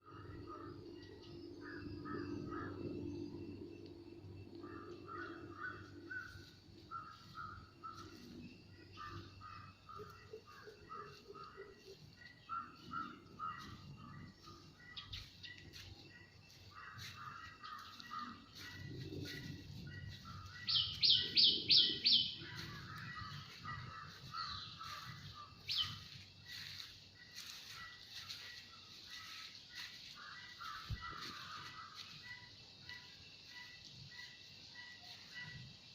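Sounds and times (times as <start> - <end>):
birds chirping: 0.0 - 35.9
crows cawing: 1.6 - 2.9, 4.6 - 8.1, 8.9 - 15.0, 16.7 - 28.3, 29.1 - 32.4.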